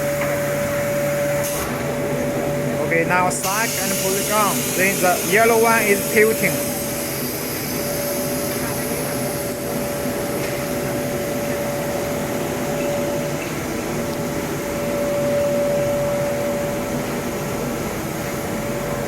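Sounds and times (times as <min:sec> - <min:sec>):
blower rushing hum: 0:00.0 - 0:19.0
blower whine: 0:00.0 - 0:19.0.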